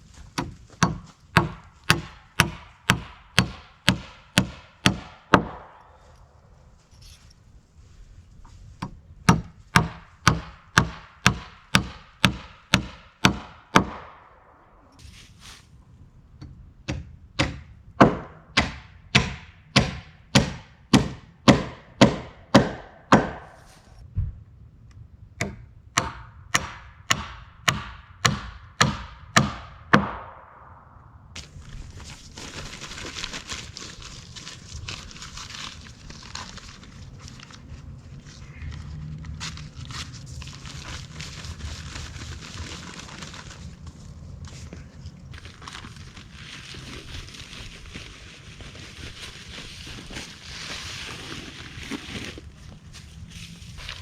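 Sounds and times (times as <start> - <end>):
hammer driving nails into wood: 0.4 - 5.8, 8.8 - 14.2, 16.9 - 23.7, 25.4 - 30.4.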